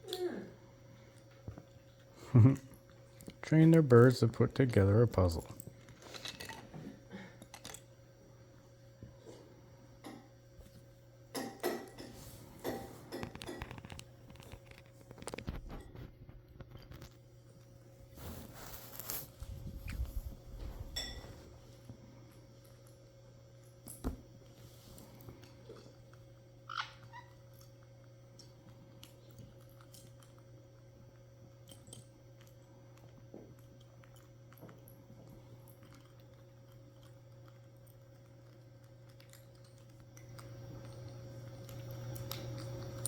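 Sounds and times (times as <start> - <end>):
steady low hum: 0.0 - 43.0
parrot squeak: 26.7 - 27.4.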